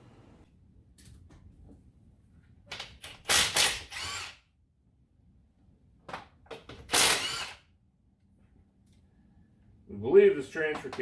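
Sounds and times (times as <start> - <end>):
power tool motor whirring: 3.4 - 4.4, 7.0 - 7.6.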